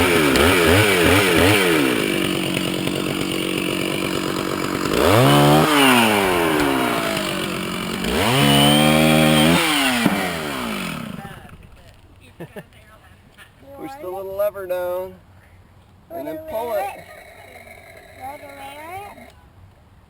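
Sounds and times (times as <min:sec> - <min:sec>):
chainsaw engine idling and revving: 0:00.0 - 0:11.9, 0:16.5 - 0:19.4.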